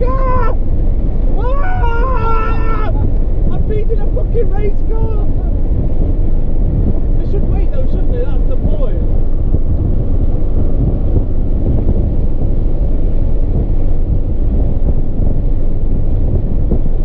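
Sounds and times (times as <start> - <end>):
car engine and road noise: 0.0 - 17.0
wind buffeting microphone: 0.0 - 17.0.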